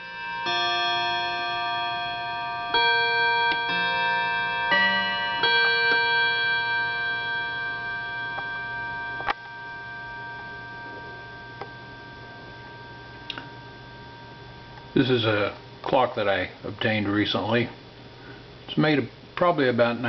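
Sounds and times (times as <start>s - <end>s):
chime clock notes ringing: 0.0s - 15.6s.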